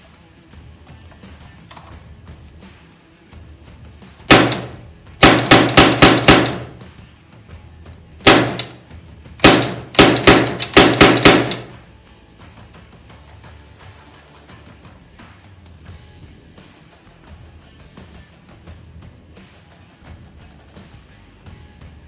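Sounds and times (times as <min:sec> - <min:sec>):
air rifle shots: 0:04.3 - 0:06.8, 0:08.2 - 0:08.8, 0:09.4 - 0:11.8.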